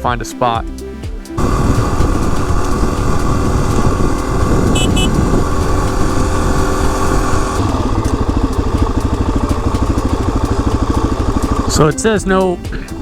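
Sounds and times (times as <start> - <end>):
motorcycle engine running: 1.3 - 13.0
short high beeps: 4.8 - 5.2.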